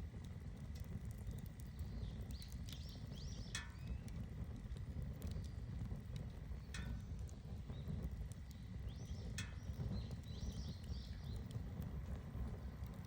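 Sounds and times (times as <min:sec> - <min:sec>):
fire pops: 0:00.0 - 0:13.0
wood fire crackling: 0:00.0 - 0:13.0.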